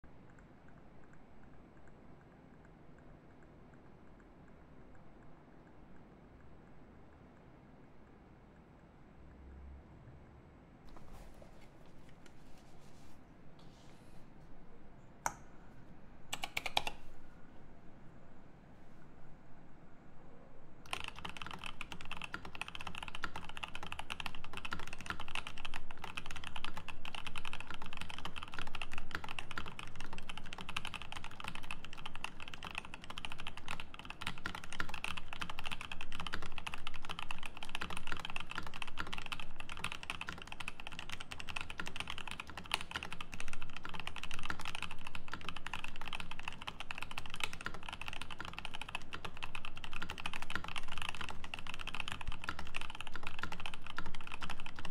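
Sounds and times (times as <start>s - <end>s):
mechanical keyboard typing: 16.3s - 17.0s, 20.9s - 54.9s.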